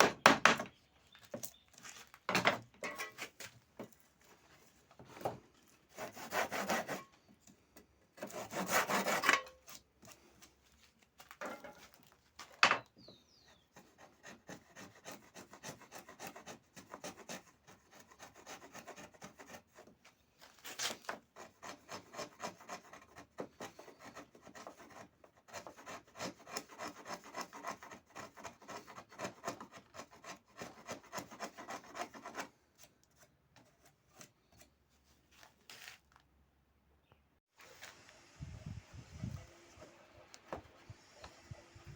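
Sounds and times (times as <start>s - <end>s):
hand sanding wood: 6.0s - 7.1s, 8.2s - 9.3s, 21.4s - 32.5s.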